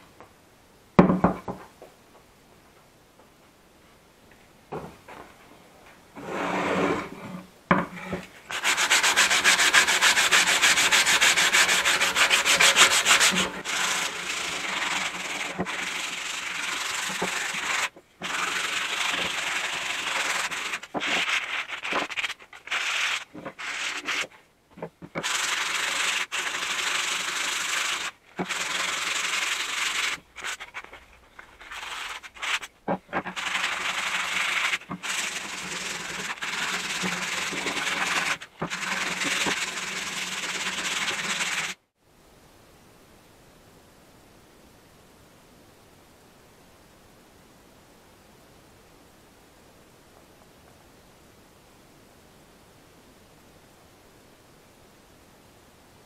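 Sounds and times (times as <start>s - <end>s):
sandpaper rubbing on wood: 8.5s - 24.3s, 25.1s - 41.8s.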